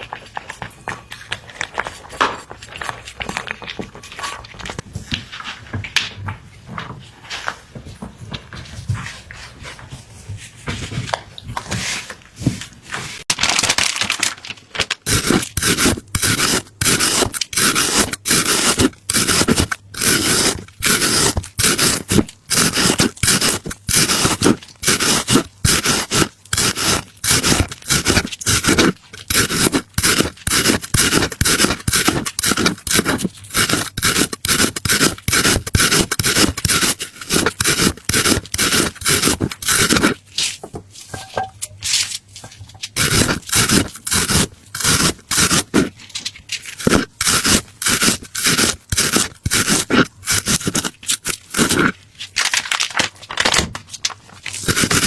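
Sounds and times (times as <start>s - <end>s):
rapid scraping strokes: 15.1s - 40.2s, 43.0s - 45.9s, 46.6s - 51.9s, 54.6s - 55.0s.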